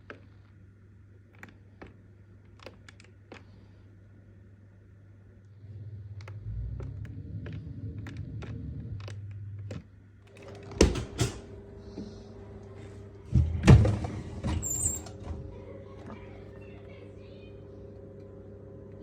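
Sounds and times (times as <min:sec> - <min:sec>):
low hum: 0:05.1 - 0:19.0
dishwasher racks clunking: 0:10.4 - 0:11.6, 0:13.3 - 0:15.6.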